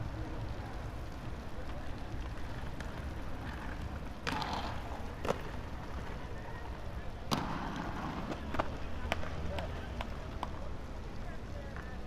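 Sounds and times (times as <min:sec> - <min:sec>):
skateboards clacking on concrete: 0:00.1 - 0:12.0
skateboard scraping: 0:01.6 - 0:10.1.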